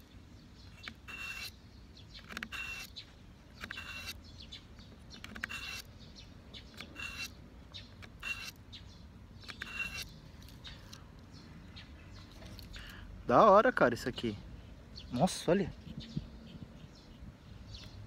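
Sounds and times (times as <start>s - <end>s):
knife rasping through sharpener: 0.8s - 1.6s, 6.8s - 7.4s, 8.2s - 8.6s, 9.5s - 10.1s.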